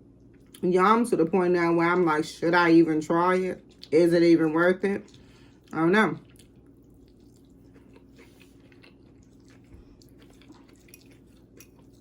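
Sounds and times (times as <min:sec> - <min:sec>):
faint chewing of food: 0:03.6 - 0:04.0, 0:04.9 - 0:12.0.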